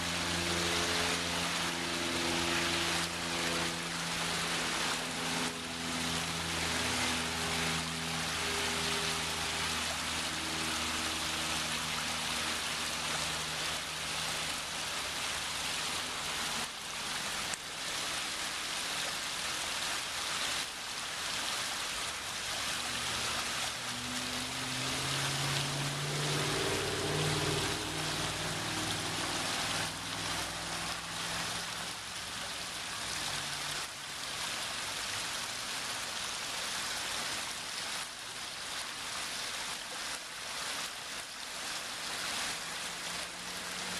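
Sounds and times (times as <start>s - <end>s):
waterfall splashing: 0.0s - 43.9s.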